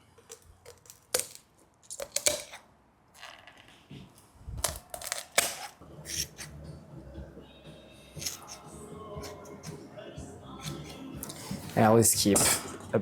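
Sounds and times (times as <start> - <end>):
shears crunching through bone: 4.6 - 6.5, 8.2 - 8.6.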